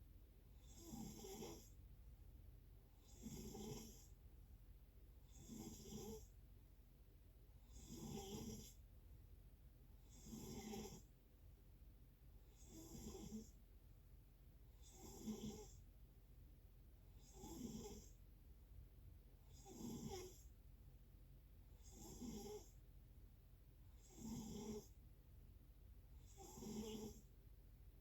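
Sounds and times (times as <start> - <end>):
quiet regular snoring: 0.5 - 1.8, 2.9 - 4.2, 5.2 - 6.4, 7.6 - 8.9, 10.0 - 11.2, 12.5 - 13.6, 14.8 - 15.9, 17.1 - 18.2, 19.4 - 20.6, 21.7 - 22.8, 23.9 - 25.0, 26.2 - 27.4.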